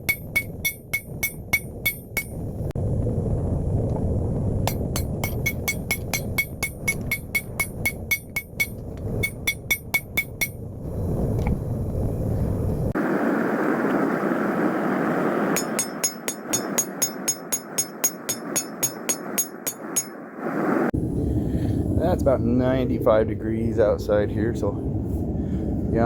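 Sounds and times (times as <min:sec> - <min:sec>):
hammer striking steel on anvil: 0:00.0 - 0:02.5, 0:04.7 - 0:10.6, 0:15.5 - 0:20.2
steady rushing noise: 0:00.0 - 0:26.0.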